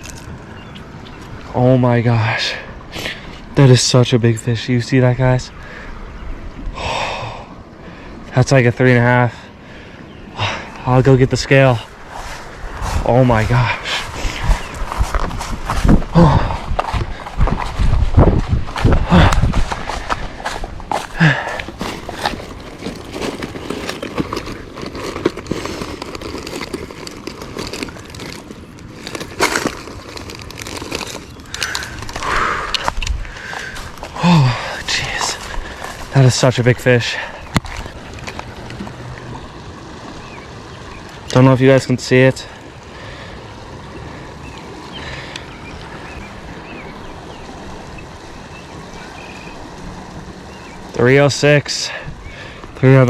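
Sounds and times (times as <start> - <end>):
crackling rustling and clicking: 0.0 - 0.4, 20.8 - 34.2, 37.5 - 39.0
bird chirps: 0.0 - 1.3
river water rushing: 42.5 - 52.8.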